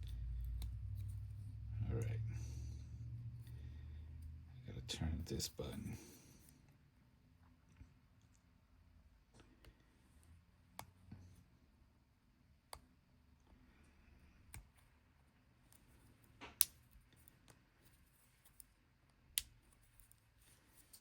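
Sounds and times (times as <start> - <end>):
small clicks and taps on watch: 0.0 - 1.6, 12.6 - 21.0.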